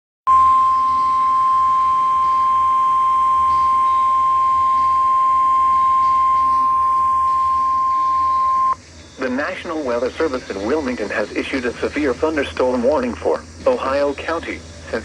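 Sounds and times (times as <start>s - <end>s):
steady high alarm tone: 0.3s - 8.8s.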